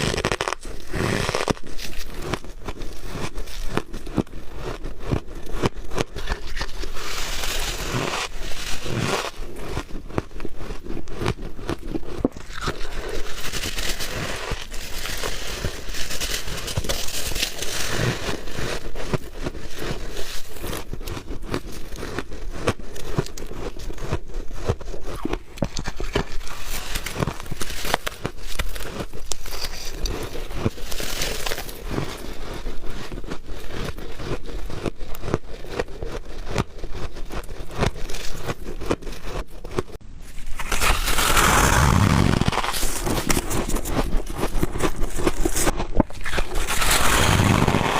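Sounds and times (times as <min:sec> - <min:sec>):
ice being bitten and chewed: 0:00.0 - 0:47.9.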